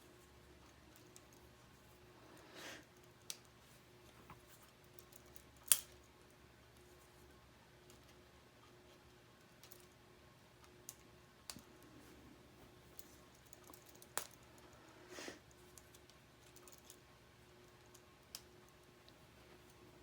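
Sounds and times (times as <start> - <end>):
rustle of handled parts: 10.8 - 14.7, 15.5 - 20.0.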